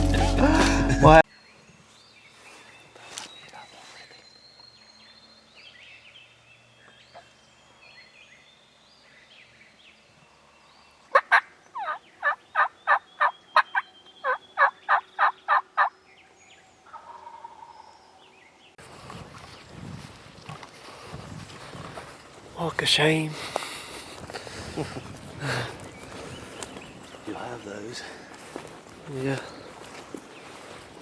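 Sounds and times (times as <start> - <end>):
faint songbird chirps: 1.3 - 19.8, 24.8 - 28.0
turkey call hen yelps: 11.2 - 15.9.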